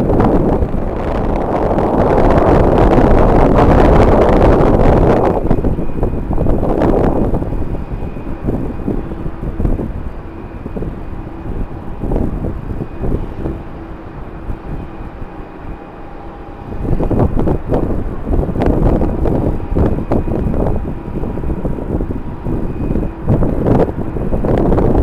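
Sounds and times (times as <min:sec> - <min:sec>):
distant jet engine hum: 0:00.0 - 0:25.0
wind buffeting microphone: 0:00.0 - 0:25.0.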